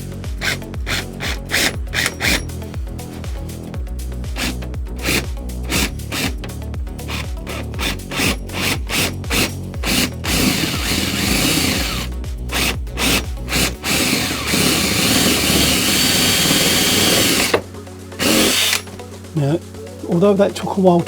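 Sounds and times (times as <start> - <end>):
power drill boring: 0.4 - 3.3, 4.4 - 19.0.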